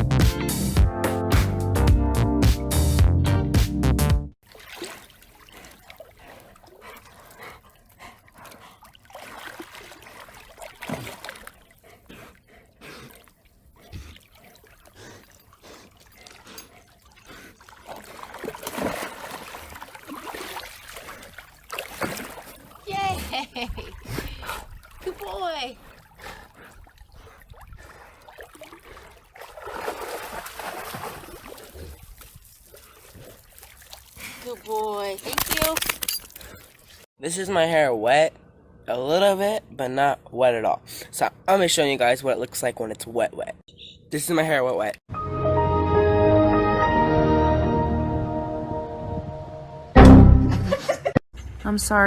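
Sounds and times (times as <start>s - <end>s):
water rushing: 4.5s - 6.8s, 17.1s - 23.2s.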